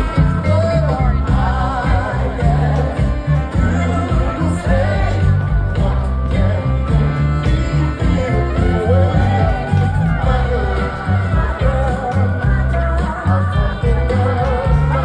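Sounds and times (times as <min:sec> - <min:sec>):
rock song with sung lead: 0:00.0 - 0:15.0.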